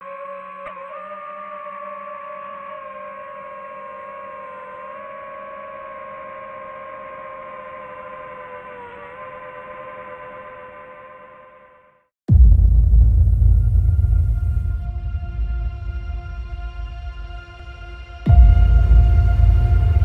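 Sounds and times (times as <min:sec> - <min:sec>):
drone propellers whining: 0:12.5 - 0:20.0.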